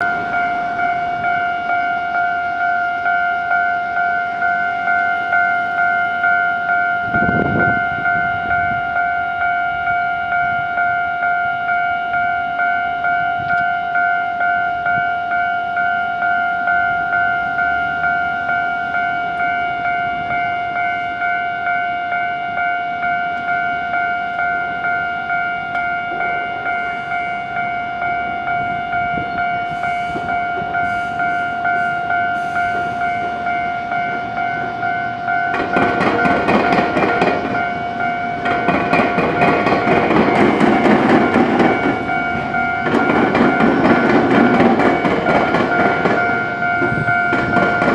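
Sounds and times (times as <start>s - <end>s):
level crossing warning bell: 0.0s - 47.9s.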